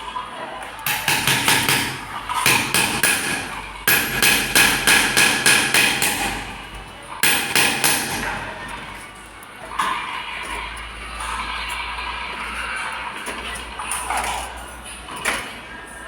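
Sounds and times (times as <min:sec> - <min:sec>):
metal-on-metal tapping: 0:00.9 - 0:09.1.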